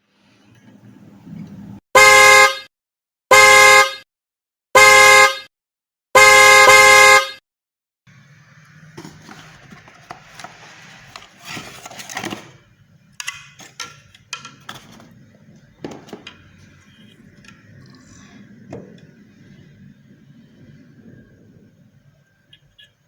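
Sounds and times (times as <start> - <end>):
steady low hum: 12.6 - 23.0.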